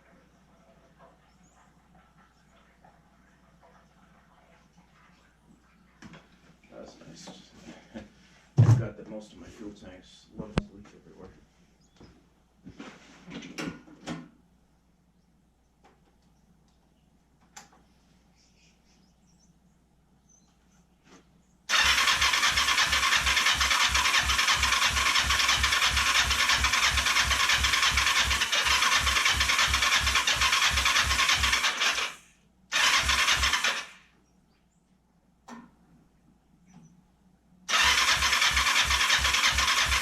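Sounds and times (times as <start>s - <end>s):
motorcycle engine cranking: 21.7s - 34.0s, 37.7s - 40.0s.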